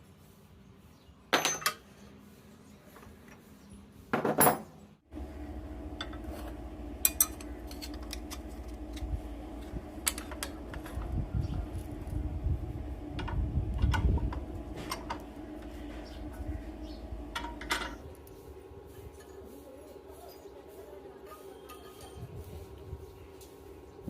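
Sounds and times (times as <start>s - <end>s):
low machine hum: 5.1s - 24.0s
metal parts clanking: 17.3s - 18.0s.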